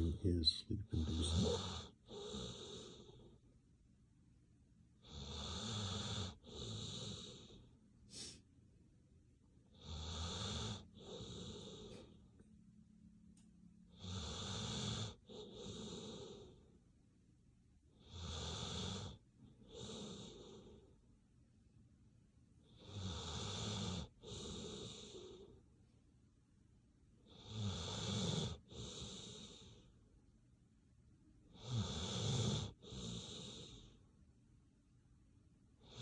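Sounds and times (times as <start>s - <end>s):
dog snoring: 0.0s - 3.4s, 5.0s - 8.4s, 9.7s - 12.2s, 13.9s - 16.8s, 17.9s - 21.0s, 22.6s - 25.6s, 27.2s - 29.9s, 31.5s - 34.0s, 35.8s - 36.0s.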